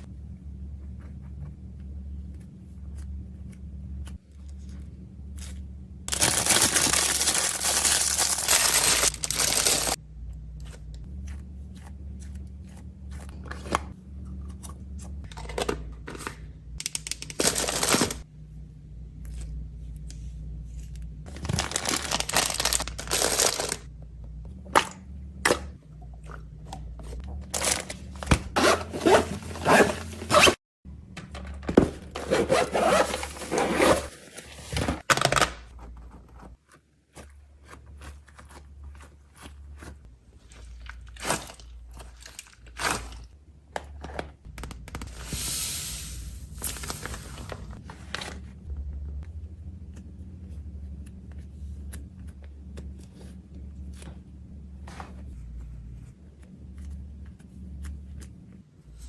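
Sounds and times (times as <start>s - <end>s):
steady low hum: 0.0s - 35.0s, 35.7s - 59.0s
plastic packaging crinkling: 6.1s - 10.0s, 17.0s - 18.2s, 21.3s - 23.9s, 46.5s - 47.8s
plastic tearing loudly: 6.1s - 10.0s.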